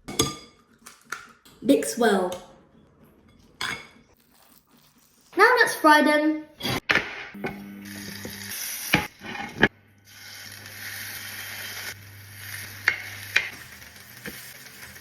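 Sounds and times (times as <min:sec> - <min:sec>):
food sizzling in hot oil: 0:07.6 - 0:15.0.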